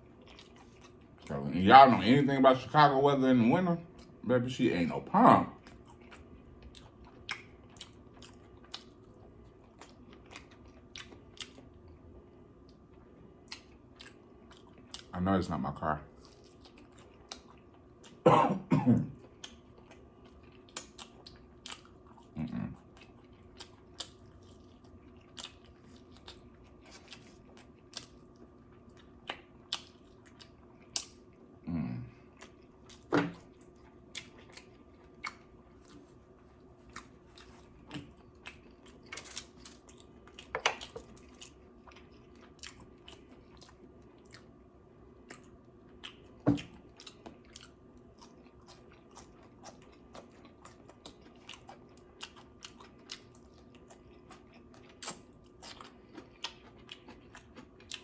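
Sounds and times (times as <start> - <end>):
chewing and biting: 5.6 - 12.0, 16.1 - 18.2, 19.2 - 31.5, 32.2 - 58.0
food crunch: 45.4 - 58.0.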